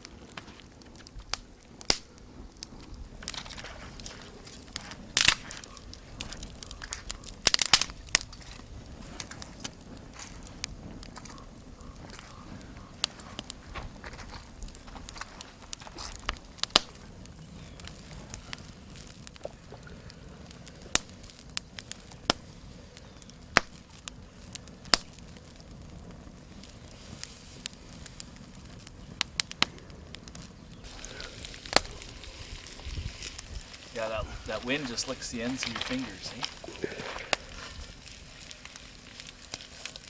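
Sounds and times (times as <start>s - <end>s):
campfire crackling and popping: 0.0s - 40.0s.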